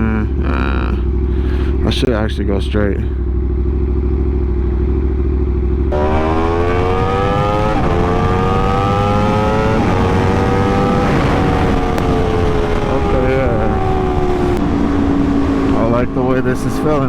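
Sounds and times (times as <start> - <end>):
motorcycle engine accelerating: 0.0 - 17.0
gear upshifts: 5.8 - 17.0.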